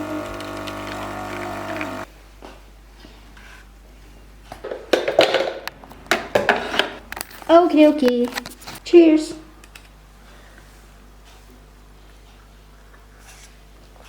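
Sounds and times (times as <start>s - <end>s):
cups knocking and clicking: 0.0s - 2.0s
coffee machine pump buzzing: 0.0s - 2.1s.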